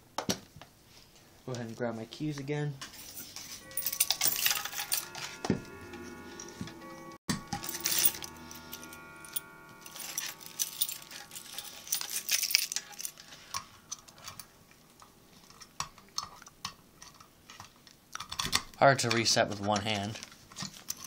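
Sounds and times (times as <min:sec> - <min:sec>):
keys jangling: 0:03.8 - 0:05.2, 0:07.6 - 0:14.4.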